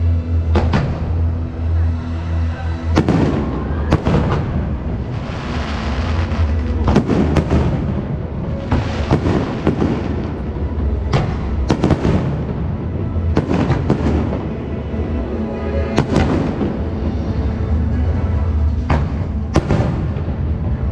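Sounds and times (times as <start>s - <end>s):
fireworks crackling and hissing: 2.8s - 14.8s
fireworks shells bursting: 8.5s - 10.4s.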